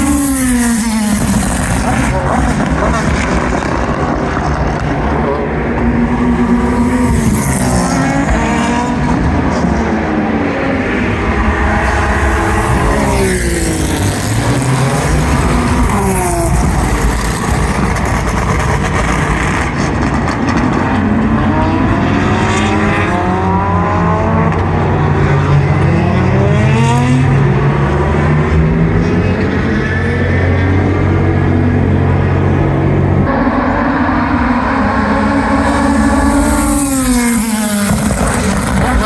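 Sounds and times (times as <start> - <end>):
race car engines accelerating: 0.0 - 39.0
exhaust pops and crackles: 1.1 - 6.0, 14.0 - 21.0, 37.7 - 39.0.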